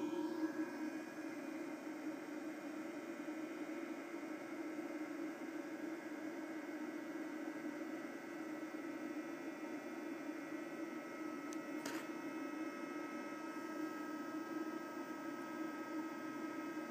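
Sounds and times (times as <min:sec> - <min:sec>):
power supply hiss and hum: 0:00.0 - 0:16.9.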